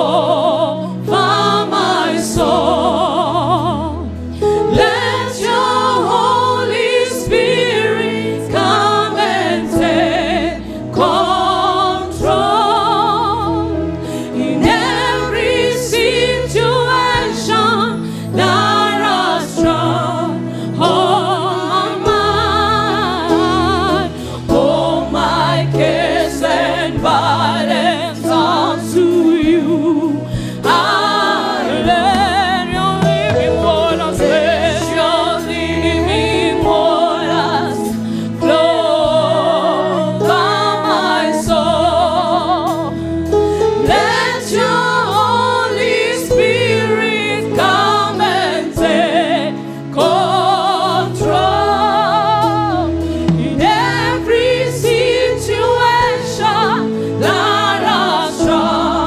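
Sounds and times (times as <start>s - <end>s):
voices singing with vibrato: 0.0s - 59.0s
band with bass and drums: 31.9s - 35.7s.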